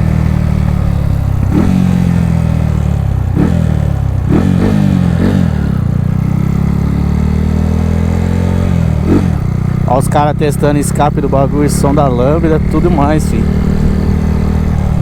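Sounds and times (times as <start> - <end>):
motorcycle engine at full throttle: 0.0 - 15.0.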